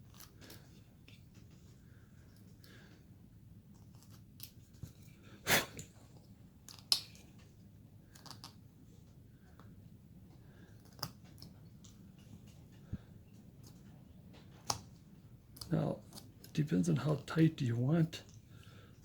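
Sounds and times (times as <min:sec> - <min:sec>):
knife carving wood: 0:14.5 - 0:16.6.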